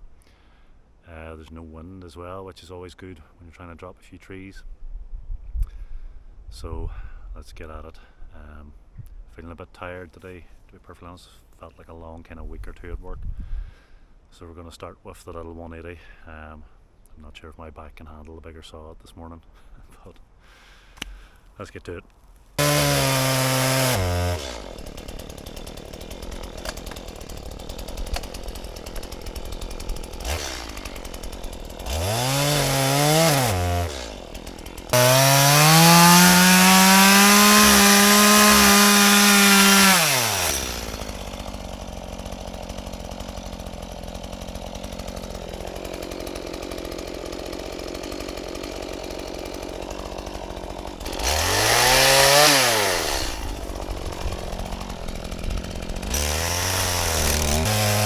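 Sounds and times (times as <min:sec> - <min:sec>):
chainsaw revving and idling: 0:22.6 - 0:58.0.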